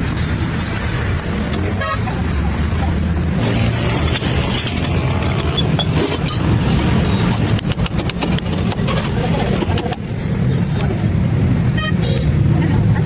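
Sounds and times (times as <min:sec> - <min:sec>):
sharp clicks and knocks: 0:00.0 - 0:10.3.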